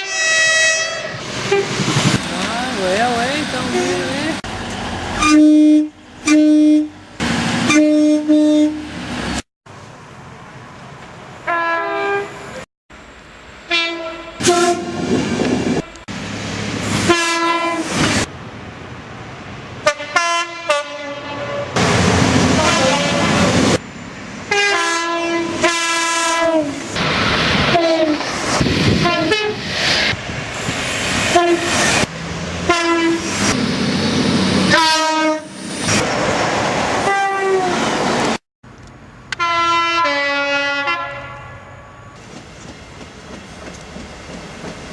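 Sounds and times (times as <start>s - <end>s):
trains passing: 0.0s - 39.9s, 41.2s - 44.9s
two-note train horn blasts: 34.7s - 35.5s, 39.4s - 42.2s.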